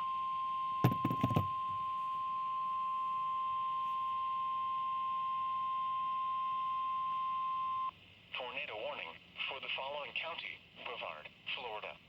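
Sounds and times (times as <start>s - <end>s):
steady warning alarm beep: 0.0s - 7.9s.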